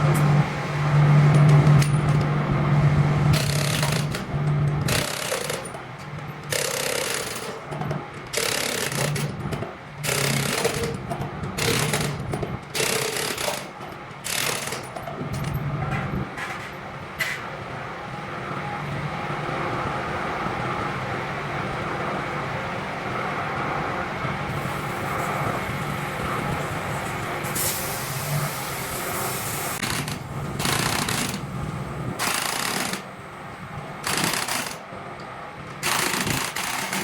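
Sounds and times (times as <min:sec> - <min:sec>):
pneumatic impact wrench hammering: 0:03.3 - 0:05.8, 0:06.4 - 0:07.6, 0:08.3 - 0:09.4, 0:10.0 - 0:11.0, 0:11.6 - 0:15.6, 0:29.7 - 0:31.5, 0:32.2 - 0:33.1, 0:34.0 - 0:34.8, 0:35.8 - 0:37.0.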